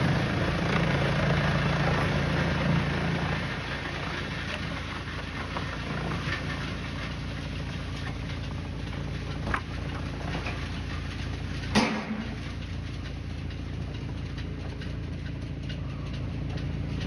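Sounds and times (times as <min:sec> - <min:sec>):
machinery engine running: 0:00.0 - 0:17.0
sharp knocks: 0:11.7 - 0:12.4.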